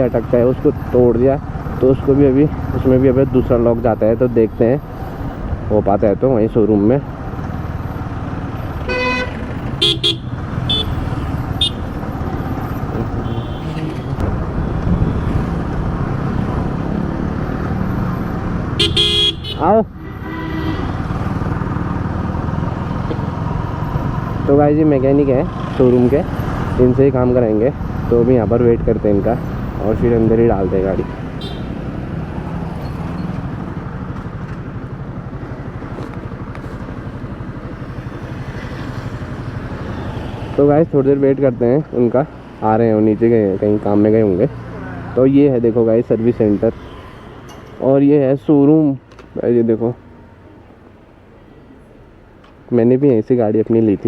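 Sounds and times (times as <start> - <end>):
motorcycle engine and road noise: 0.0 - 54.0
vehicle horns tooting: 8.8 - 12.2, 12.8 - 15.6, 18.7 - 21.4, 29.9 - 32.0.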